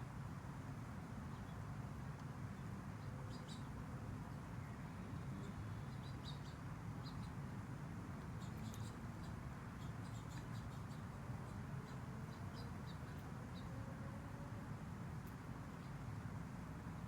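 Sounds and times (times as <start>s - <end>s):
small birds chirping: 2.6s - 3.7s, 4.7s - 7.4s, 8.3s - 13.8s.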